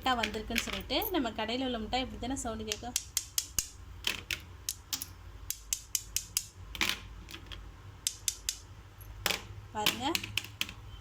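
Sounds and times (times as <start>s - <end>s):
hard candies clicking together: 2.7s - 8.7s.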